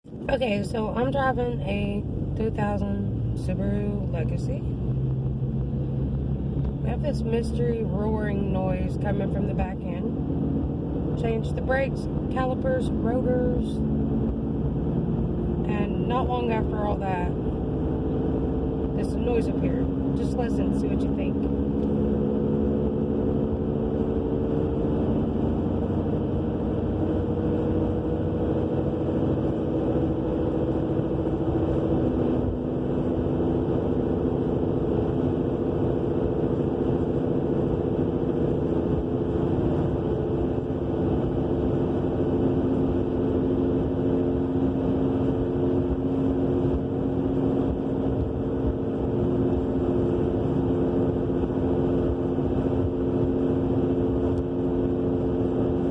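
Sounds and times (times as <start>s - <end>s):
road rumble: 0.0s - 55.9s
car rear end roaring hum: 0.1s - 55.9s.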